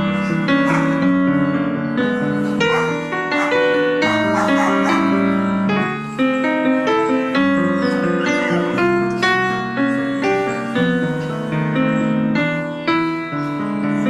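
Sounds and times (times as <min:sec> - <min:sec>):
slow piano piece: 0:00.0 - 0:14.0.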